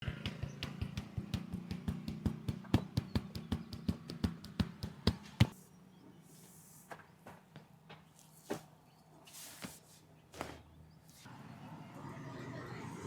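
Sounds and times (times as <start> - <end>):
hands slapping and tapping head: 0.1 - 5.5.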